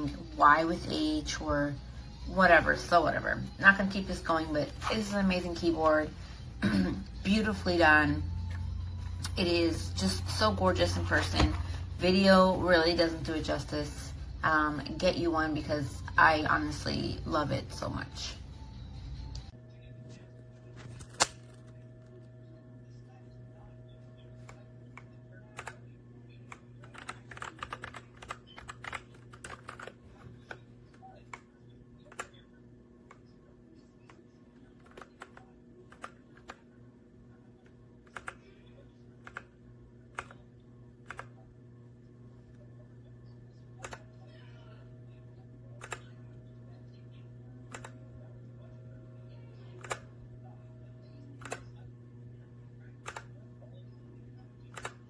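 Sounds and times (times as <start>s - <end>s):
low electrical hum: 0.0s - 55.0s
mechanical keyboard typing: 26.5s - 30.0s.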